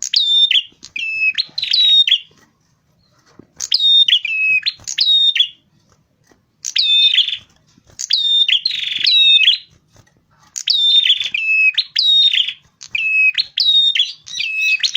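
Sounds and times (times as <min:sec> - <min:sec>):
bird singing whistled notes: 0:00.0 - 0:02.3, 0:03.6 - 0:05.6, 0:06.6 - 0:09.7, 0:10.6 - 0:14.9.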